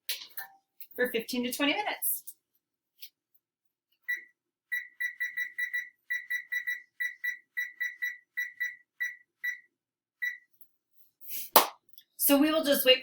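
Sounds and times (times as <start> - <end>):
timer keypad beeps: 4.1 - 10.5.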